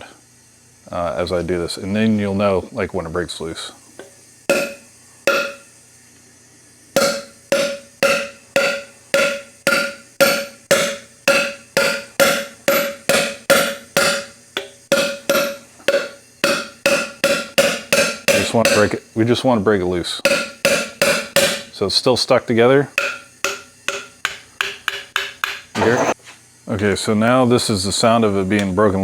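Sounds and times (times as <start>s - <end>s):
sledgehammer striking metal socket: 7.0s - 19.0s.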